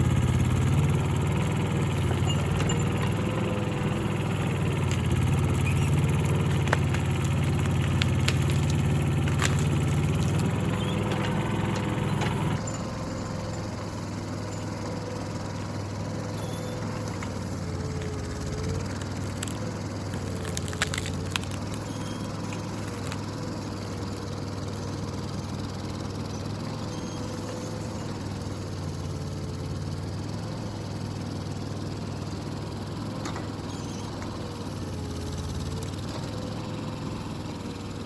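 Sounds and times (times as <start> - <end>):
mini excavator engine running: 0.0 - 38.0
wood and branches snapping: 4.8 - 12.4, 17.1 - 24.3.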